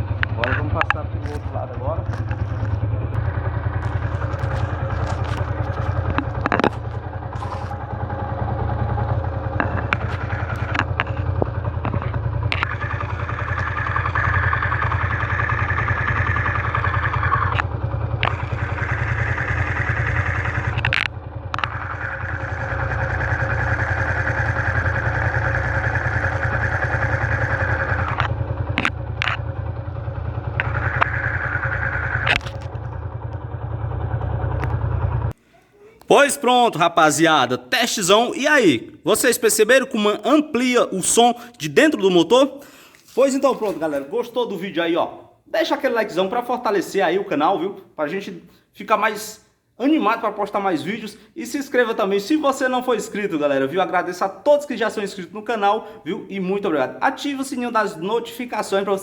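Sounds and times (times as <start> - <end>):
amplified motorcycle engine idling: 0.0 - 35.4
bright engine clatter: 0.0 - 35.4.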